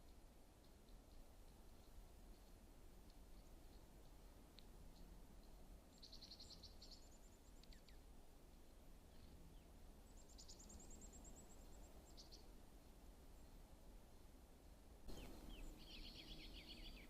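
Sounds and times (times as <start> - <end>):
faint songbird trilling: 4.9 - 8.1, 9.1 - 12.6, 15.1 - 17.0.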